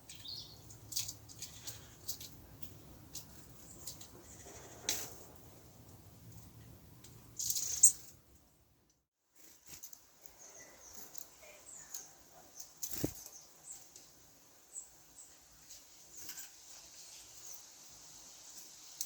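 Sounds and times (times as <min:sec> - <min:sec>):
thin high bird calls: 0:00.0 - 0:02.3, 0:07.4 - 0:08.2
bird wings fluttering: 0:12.8 - 0:13.4.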